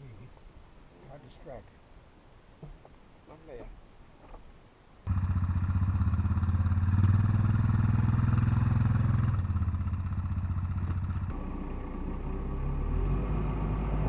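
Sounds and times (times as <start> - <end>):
atv engine revving: 5.1 - 14.0.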